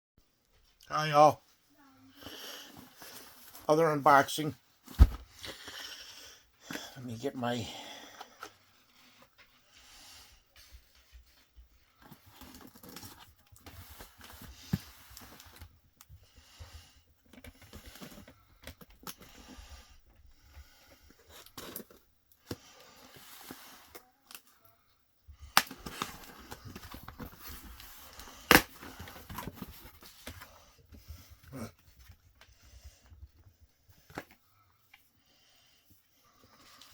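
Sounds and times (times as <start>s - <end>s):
cardboard and packing rustling: 2.6s - 3.7s, 4.6s - 6.0s, 10.4s - 24.5s, 25.4s - 35.1s.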